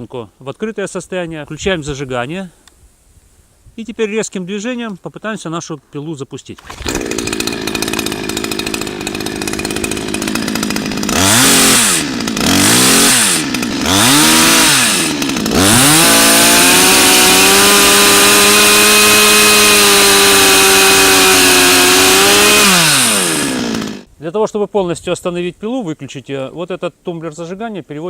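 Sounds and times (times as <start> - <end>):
chainsaw idling and revving: 6.6 - 24.1.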